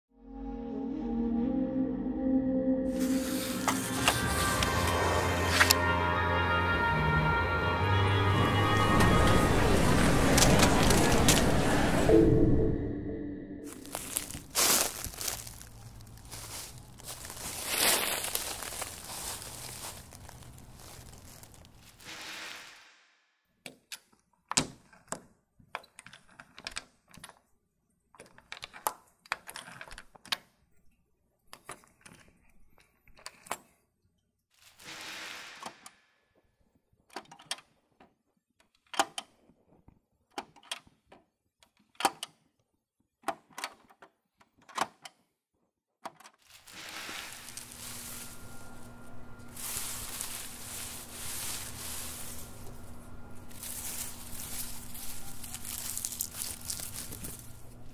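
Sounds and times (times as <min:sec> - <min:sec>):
faint steady hums: 0:47.0 - 0:57.9.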